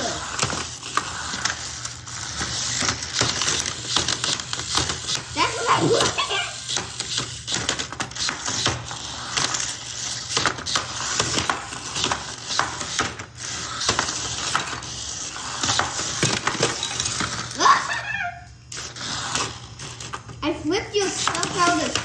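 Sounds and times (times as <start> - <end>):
toy robots clattering: 0.0 - 7.8, 16.0 - 22.0.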